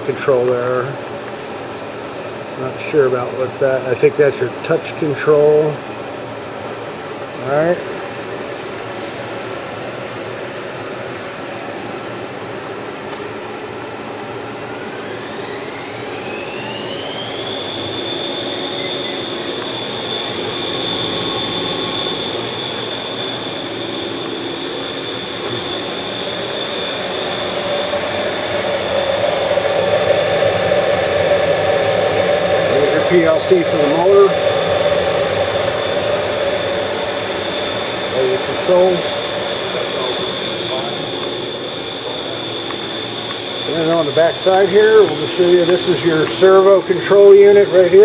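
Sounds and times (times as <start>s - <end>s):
electric motor whine rising: 13.6s - 48.0s
milling machine whirring: 14.3s - 48.0s.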